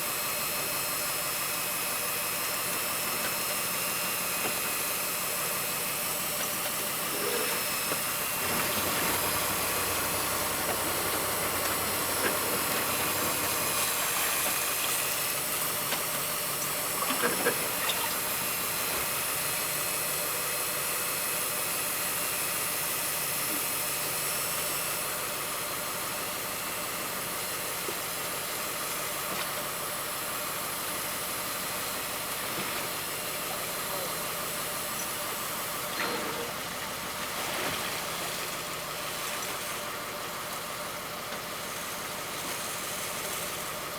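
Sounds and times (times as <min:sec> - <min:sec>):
boat engine running: 0:04.3 - 0:19.4.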